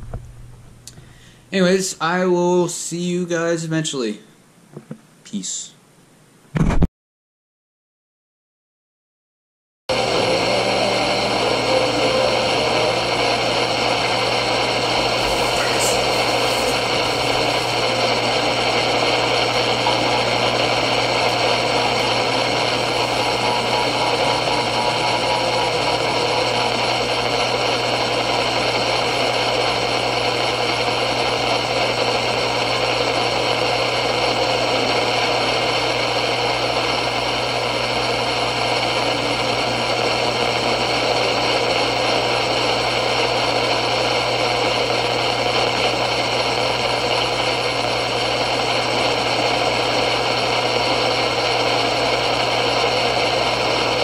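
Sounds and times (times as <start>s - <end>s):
radio static hiss: 9.9s - 29.2s.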